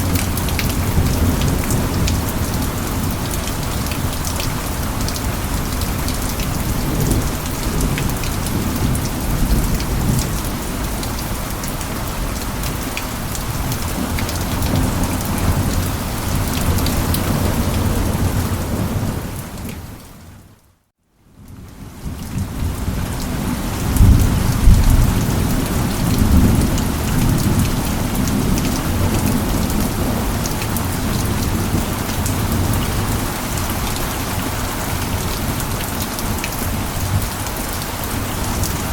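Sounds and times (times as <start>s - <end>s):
heavy rain: 0.0s - 38.9s
low rolling thunder: 22.0s - 37.4s.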